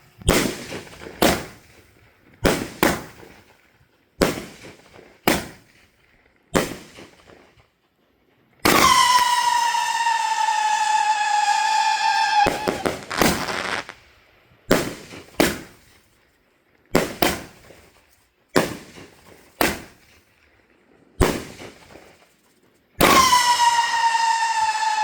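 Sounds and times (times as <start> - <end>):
firework bangs: 0.2 - 3.6, 4.2 - 5.8, 6.5 - 7.5, 8.6 - 14.0, 14.7 - 16.0, 16.9 - 18.0, 18.6 - 20.2, 21.2 - 22.2, 23.0 - 25.0
firework whistling tail: 8.6 - 14.0, 23.0 - 25.0.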